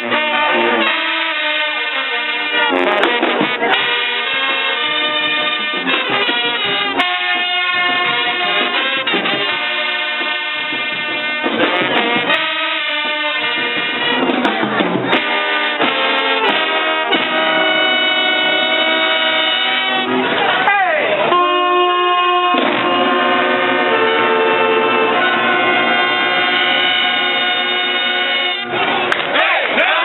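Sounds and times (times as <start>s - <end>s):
brass horns holding chords: 0.0s - 20.6s, 21.2s - 30.0s
drum beat: 5.5s - 15.3s.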